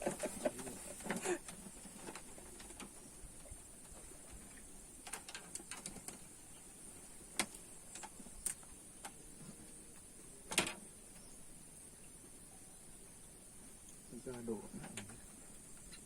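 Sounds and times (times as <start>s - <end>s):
faint high hiss: 0.0s - 16.0s
light clicks and taps: 13.8s - 16.0s.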